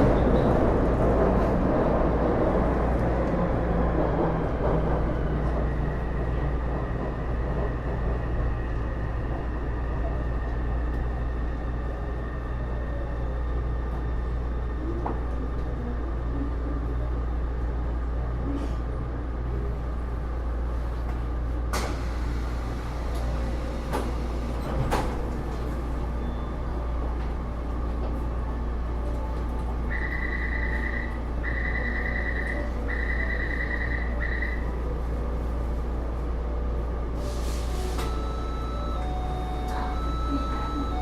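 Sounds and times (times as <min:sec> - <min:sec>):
train equipment hum: 0:00.0 - 0:41.0
door warning beeps: 0:38.0 - 0:41.0.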